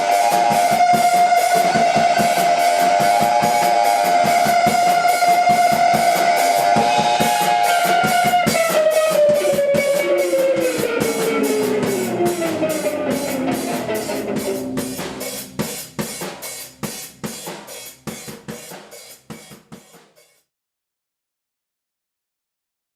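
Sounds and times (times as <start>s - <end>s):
electric guitar sliding down: 0.0s - 15.9s
rapid drum kit hits: 0.0s - 20.4s.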